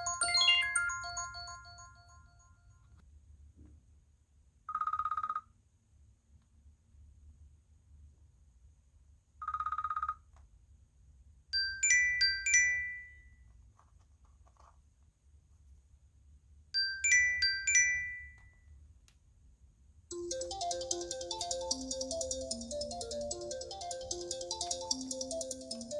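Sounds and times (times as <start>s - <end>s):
phone ringtone trilling: 0.0s - 2.4s, 20.1s - 25.9s
high chiming ringtone notes: 0.0s - 2.6s, 11.6s - 13.2s, 16.8s - 18.4s, 20.1s - 25.9s.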